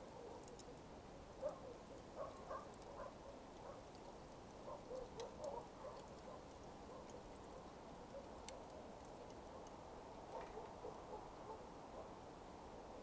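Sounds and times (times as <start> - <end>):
coals crackling and popping: 0.0 - 13.0
low steady hiss: 0.0 - 13.0.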